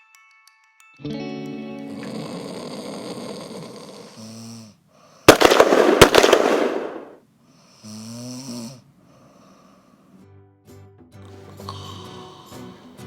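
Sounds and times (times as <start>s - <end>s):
person snoring: 1.8s - 4.8s, 7.8s - 9.7s, 11.5s - 13.0s.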